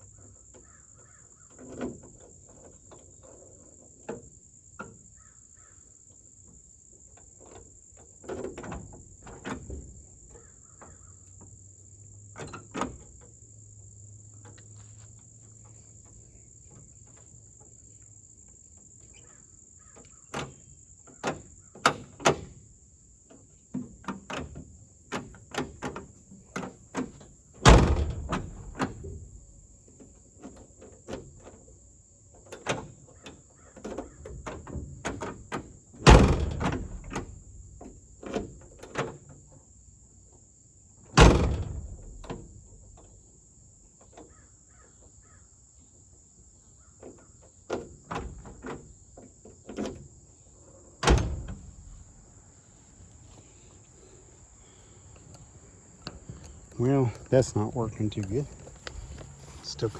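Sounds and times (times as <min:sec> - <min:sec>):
car door slamming: 0:27.0 - 0:29.4, 0:35.3 - 0:37.9, 0:41.2 - 0:43.0, 0:51.0 - 0:52.3
door handle and latch clicks: 0:27.6 - 0:29.2, 0:36.1 - 0:37.4.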